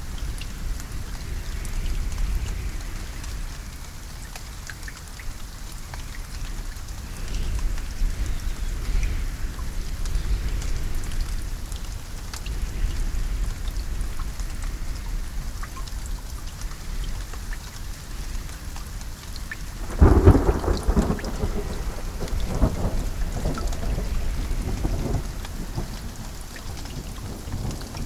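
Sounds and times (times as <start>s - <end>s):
steady rain falling: 0.0s - 28.0s
rolling thunder: 19.7s - 28.0s
loud thunderclap: 19.8s - 28.0s.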